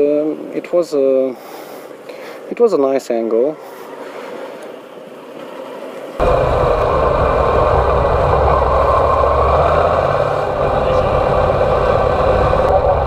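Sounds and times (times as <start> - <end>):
heavy wind noise: 6.2 - 13.0
motorcycle engine running: 6.2 - 13.0.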